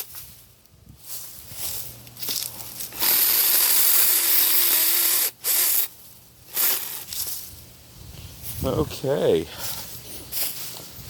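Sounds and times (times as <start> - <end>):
chainsaw cutting branches: 2.2 - 7.4.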